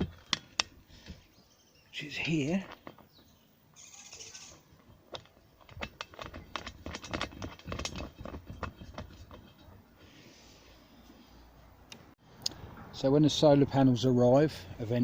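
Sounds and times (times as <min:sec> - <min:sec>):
metal fittings clicking and knocking: 0:05.1 - 0:09.9.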